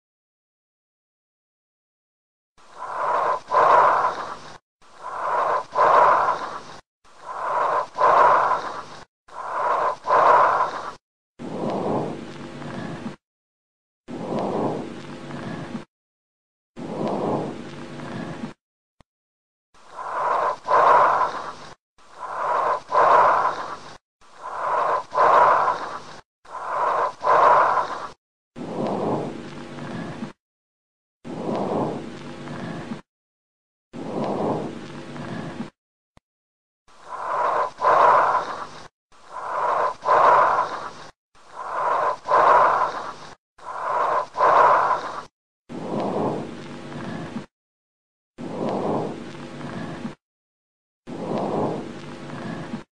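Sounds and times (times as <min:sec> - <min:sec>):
harsh hollow breathing: 0:02.7 - 0:11.0, 0:19.9 - 0:28.2, 0:37.0 - 0:45.3.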